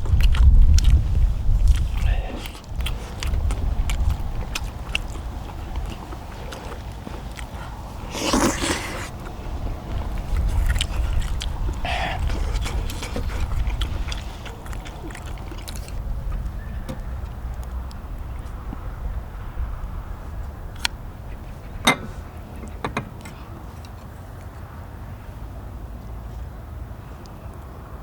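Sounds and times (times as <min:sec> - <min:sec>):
steady low rumble: 0:00.0 - 0:08.2, 0:09.0 - 0:22.7
people chewing and eating: 0:00.0 - 0:28.0.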